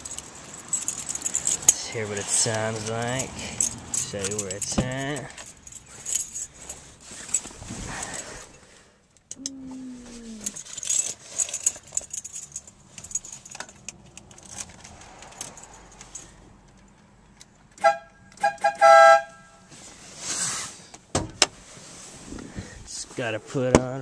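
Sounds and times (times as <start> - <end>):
light jingling: 0.0 - 7.5, 10.3 - 17.4
air horn blasts: 17.8 - 19.7.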